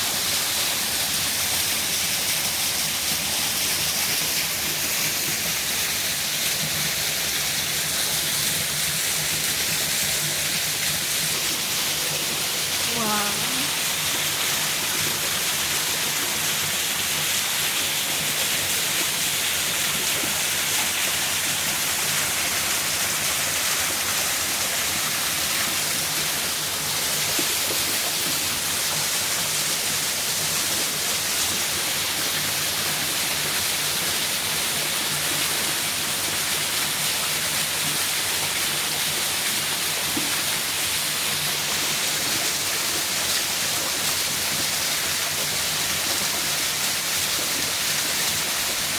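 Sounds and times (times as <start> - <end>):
waterfall hiss: 0.0 - 48.9.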